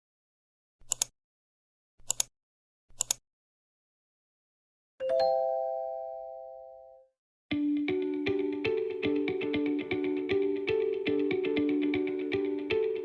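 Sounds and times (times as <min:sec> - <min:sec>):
doorbell ding: 0:05.0 - 0:07.0.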